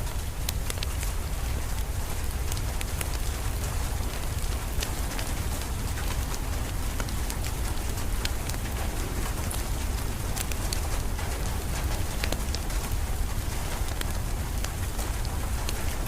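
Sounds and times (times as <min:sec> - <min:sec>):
steady rain: 0:00.0 - 0:16.0
wood fire crackling and popping: 0:00.2 - 0:16.0.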